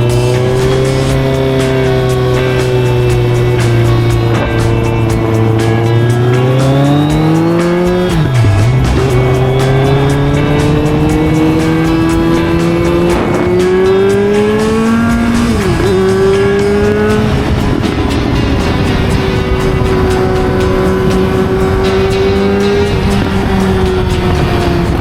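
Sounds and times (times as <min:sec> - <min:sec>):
motorcycle engine shifting gears: 0:00.0 - 0:25.0.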